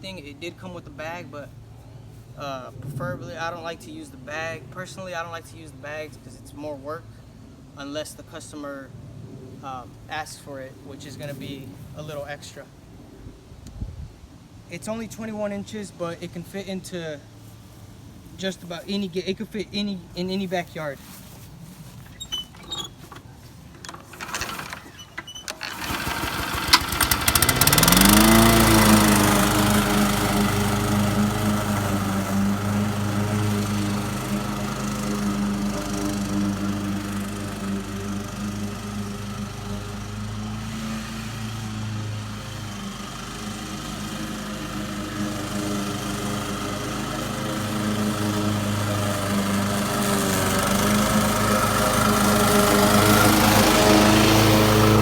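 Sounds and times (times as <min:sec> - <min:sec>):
lawn mower engine starting: 0:21.1 - 0:55.0.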